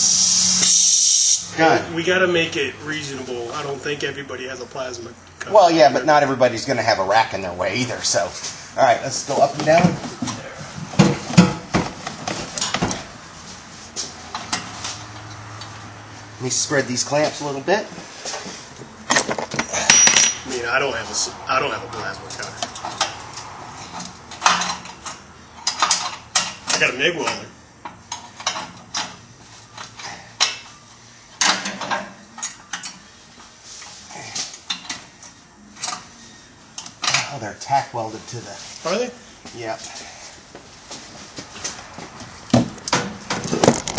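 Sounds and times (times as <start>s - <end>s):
exhaust pipe knocking and clunking: 10.7s - 13.1s.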